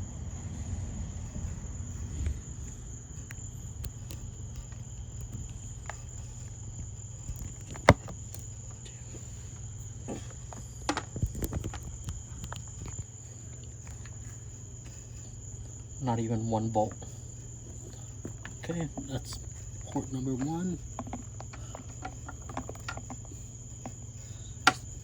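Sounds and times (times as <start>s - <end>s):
low hum: 0.0s - 15.8s
high insect drone: 0.0s - 25.0s.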